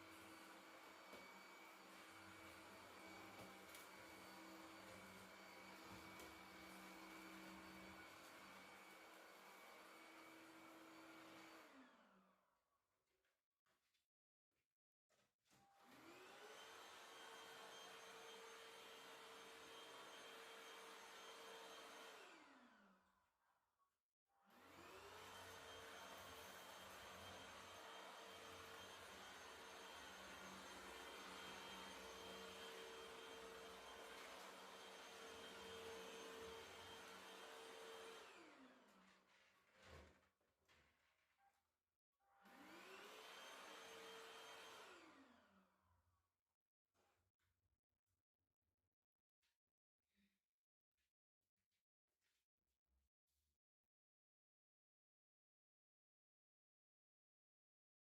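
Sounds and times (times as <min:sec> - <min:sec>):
vacuum cleaner motor whining: 0:00.0 - 0:12.2, 0:15.8 - 0:22.9, 0:24.5 - 0:39.0, 0:42.5 - 0:45.4.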